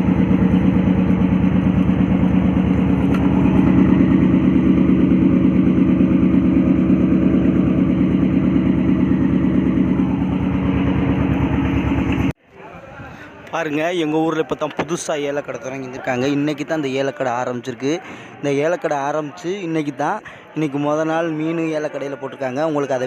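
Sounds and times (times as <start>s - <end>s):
boat engine running steadily: 0.0s - 12.4s.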